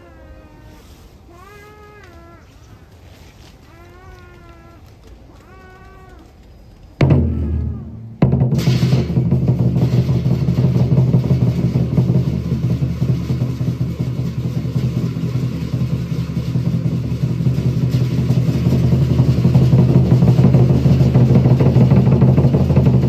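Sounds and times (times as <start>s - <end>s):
deep low rumble: 7.0s - 23.0s
drumming and percussion: 7.0s - 23.0s.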